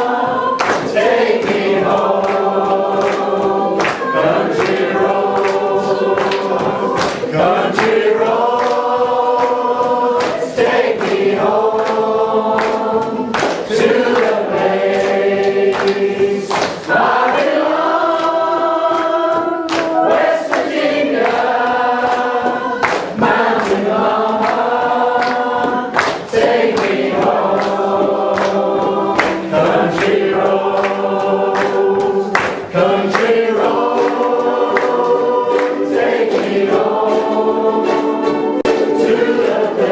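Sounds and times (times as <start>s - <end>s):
group singing in chorus: 0.0s - 39.9s
strummed ukuleles: 0.0s - 39.9s.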